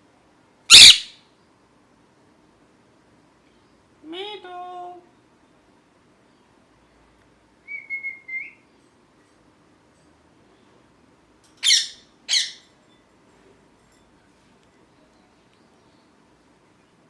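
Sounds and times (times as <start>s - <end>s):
parrot squawks: 0.7s - 1.2s, 11.6s - 12.6s
parrot whistle: 0.7s - 1.2s, 7.6s - 8.6s.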